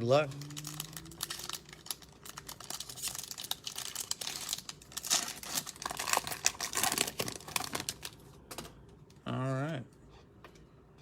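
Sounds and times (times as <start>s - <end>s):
foil packs tearing and crinkling: 0.0s - 8.2s.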